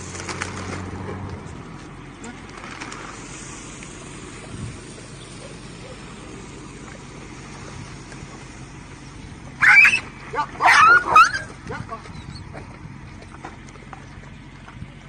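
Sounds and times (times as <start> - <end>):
low background rumble: 0.0 - 15.0
dog yelping: 9.6 - 12.5.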